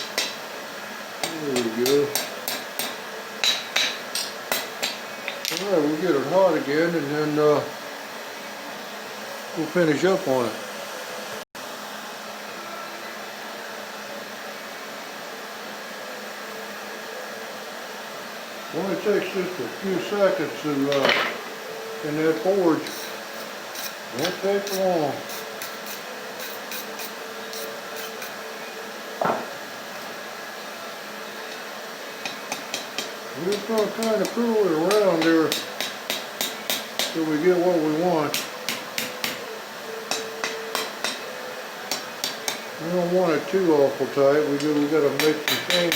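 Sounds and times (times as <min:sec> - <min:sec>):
forge air blower rushing: 0:15.6 - 0:45.9.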